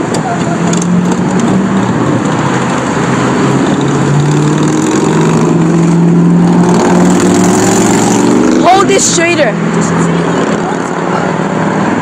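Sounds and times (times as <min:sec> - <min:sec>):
vehicle engine droning: 0:00.0 - 0:12.0.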